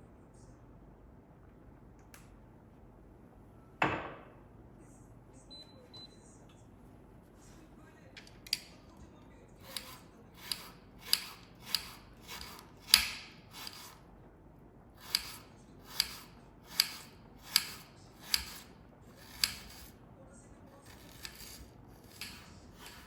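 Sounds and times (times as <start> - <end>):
cutting strokes swishing and snapping: 15.0 - 19.9.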